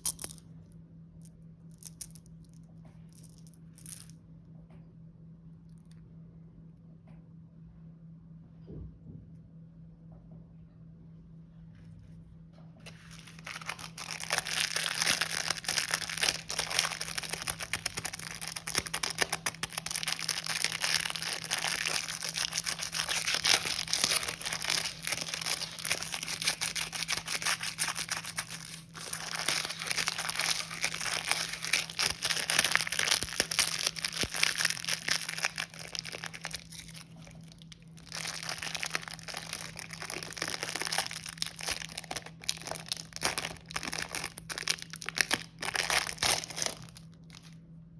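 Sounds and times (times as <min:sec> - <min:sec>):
faint low hum: 0:00.0 - 0:47.9
plastic packaging crinkling and tearing: 0:12.8 - 0:47.6.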